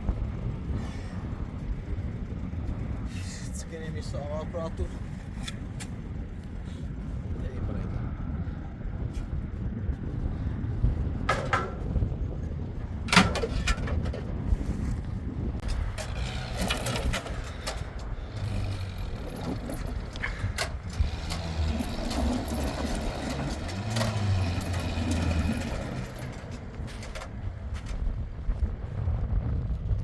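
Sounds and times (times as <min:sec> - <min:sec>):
sharp knocks and clanks: 0:11.2 - 0:12.1, 0:13.0 - 0:14.3, 0:15.6 - 0:28.1
vehicle engine revving: 0:15.6 - 0:28.2.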